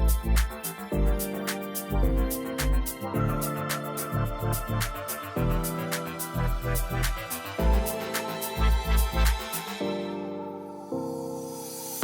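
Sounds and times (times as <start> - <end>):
hi-hat ticks: 0.0 - 9.8
synth chords: 0.0 - 12.0
deep bass pulse: 8.6 - 9.4.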